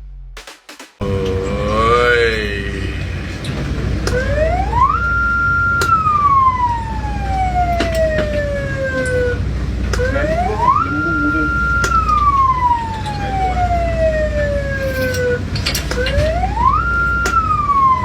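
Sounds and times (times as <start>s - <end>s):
steady low rumble: 0.0s - 17.7s
motor-driven siren winding: 4.1s - 18.0s.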